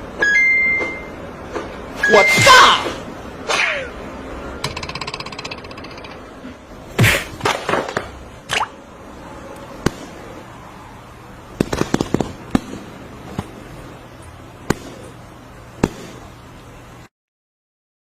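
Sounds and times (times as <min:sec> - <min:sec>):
sharp cracks or knocks: 0:06.9 - 0:08.7.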